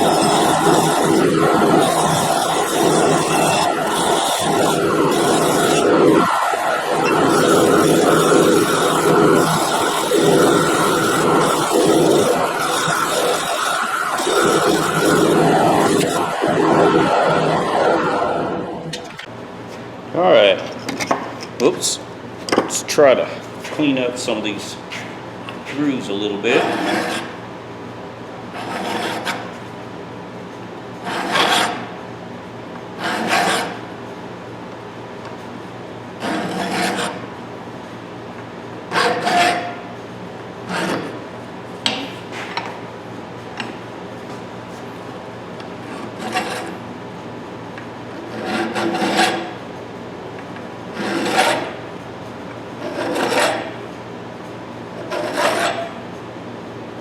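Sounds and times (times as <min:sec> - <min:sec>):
hand file scraping steel: 0:26.5 - 0:27.3, 0:28.6 - 0:29.4, 0:31.0 - 0:31.8, 0:33.0 - 0:33.8, 0:36.2 - 0:37.2, 0:46.0 - 0:46.7, 0:48.2 - 0:49.5, 0:51.0 - 0:51.8, 0:52.8 - 0:53.7, 0:55.0 - 0:55.9.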